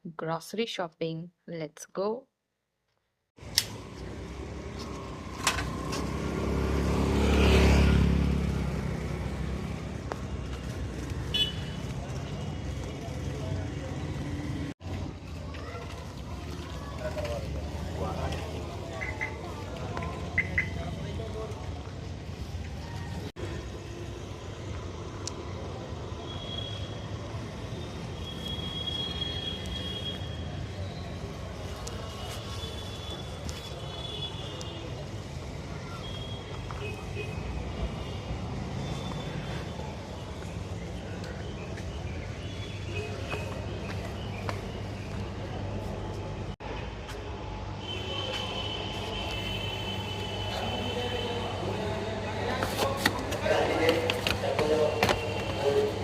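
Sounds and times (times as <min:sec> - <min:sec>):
road traffic rumble: 0:03.4 - 0:56.0
vehicle engine passing: 0:04.2 - 0:10.0.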